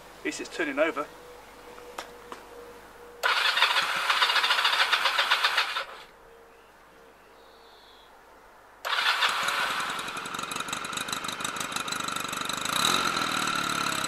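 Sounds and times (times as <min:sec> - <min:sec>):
motorcycle engine cranking: 0:03.2 - 0:06.1, 0:08.8 - 0:14.0.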